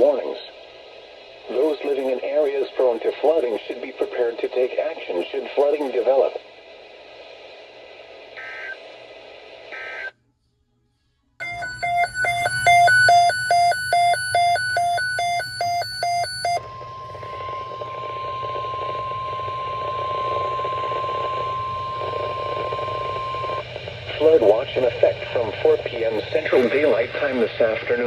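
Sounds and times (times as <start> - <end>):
radio hiss: 0.0 - 10.1, 16.5 - 28.0
fast electronic beeping: 11.4 - 23.6
steady warning alarm tone: 11.4 - 28.0.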